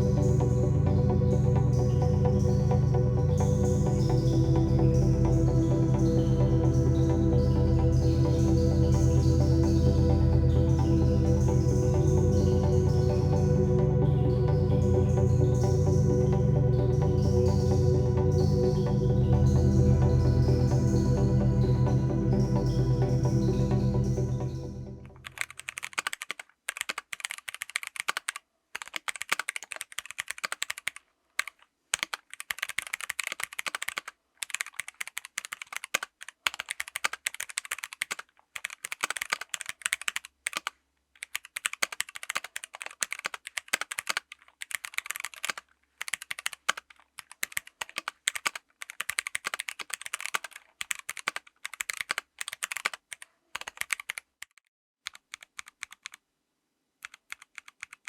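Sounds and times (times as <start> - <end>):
mechanical keyboard typing: 25.2 - 56.2, 57.0 - 58.0.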